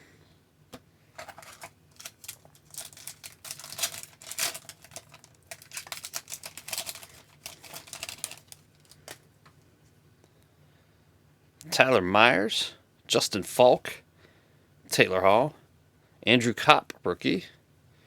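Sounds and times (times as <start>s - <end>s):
card pack wrapper crackling: 1.2s - 9.2s.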